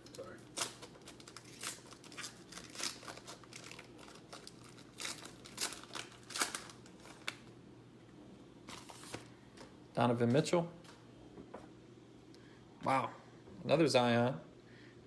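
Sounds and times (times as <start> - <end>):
cards and wrapper crinkling: 0.0 - 7.5, 8.7 - 9.7.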